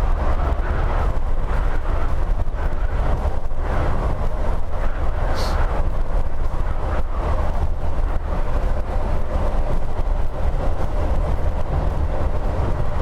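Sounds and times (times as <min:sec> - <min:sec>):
engine and tyres rumbling: 0:00.0 - 0:13.0
hiss from wet road: 0:04.9 - 0:05.9.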